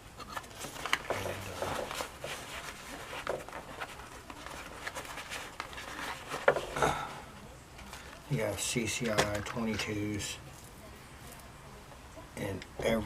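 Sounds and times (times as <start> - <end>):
items clicking and knocking: 0.2 - 6.8, 9.0 - 10.0
rustling in a bag pouch: 0.4 - 6.8.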